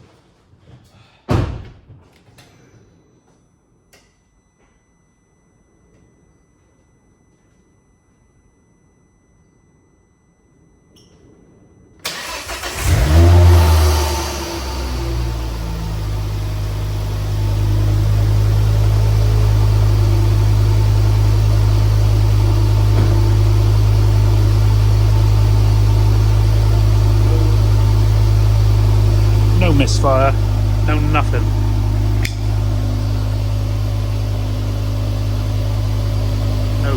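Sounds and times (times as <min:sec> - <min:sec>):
car engine starting and idling: 0:12.0 - 0:36.9.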